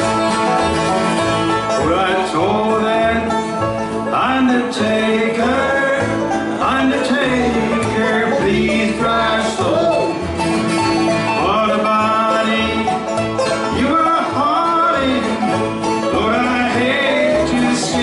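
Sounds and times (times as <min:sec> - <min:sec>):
bluegrass band playing: 0:00.0 - 0:18.0.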